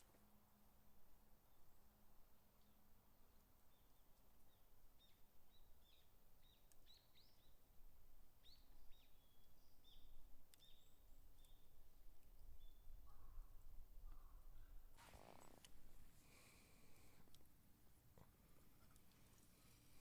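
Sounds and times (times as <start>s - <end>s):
small birds chirping: 3.5s - 7.7s, 8.4s - 17.1s.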